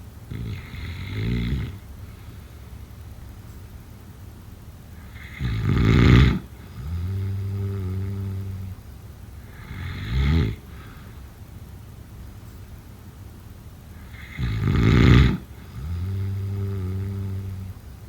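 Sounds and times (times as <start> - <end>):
person snoring: 0.3 - 1.8, 5.1 - 8.8, 14.1 - 17.8.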